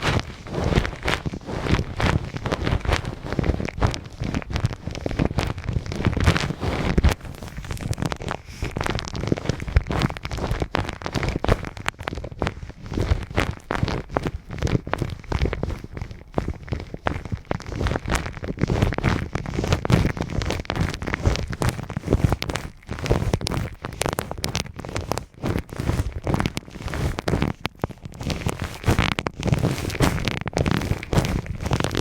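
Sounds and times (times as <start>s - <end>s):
hands rubbing on microphone: 0.0s - 32.0s.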